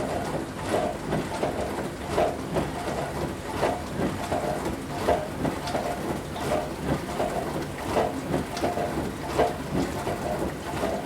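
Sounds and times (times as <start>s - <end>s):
water spraying and sloshing: 4.3s - 11.0s.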